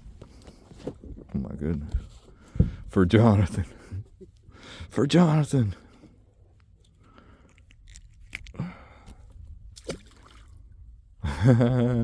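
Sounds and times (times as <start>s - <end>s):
handling rustling and clicks: 6.6s - 8.6s.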